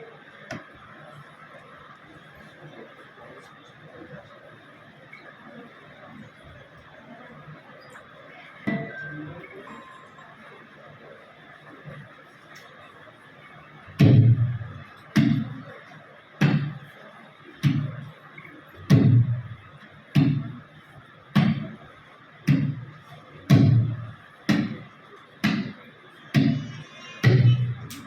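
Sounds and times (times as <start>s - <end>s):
tabla deep strokes: 14.0s - 15.6s, 18.8s - 19.6s, 22.5s - 25.8s, 26.4s - 28.0s.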